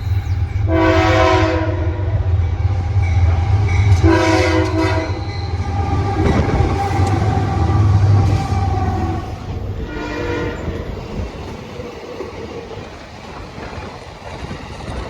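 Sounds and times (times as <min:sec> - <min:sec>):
locomotive horn blasts: 0:00.7 - 0:02.2, 0:03.8 - 0:10.9.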